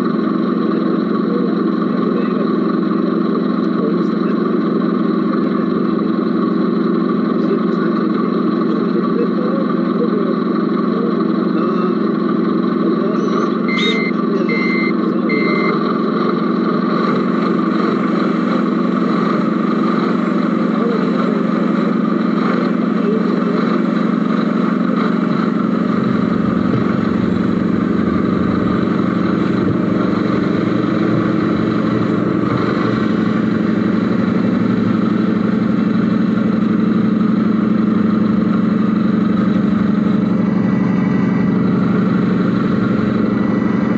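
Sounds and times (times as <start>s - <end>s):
model truck engine sound: 0.0s - 43.9s
reversing beeps: 13.2s - 15.8s.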